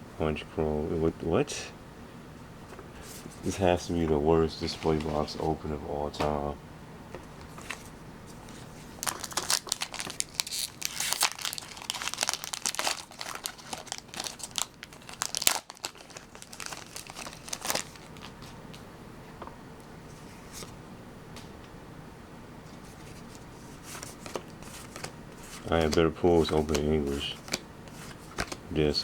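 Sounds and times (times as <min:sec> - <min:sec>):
foil wrapper crinkling and tearing: 0:08.8 - 0:18.5.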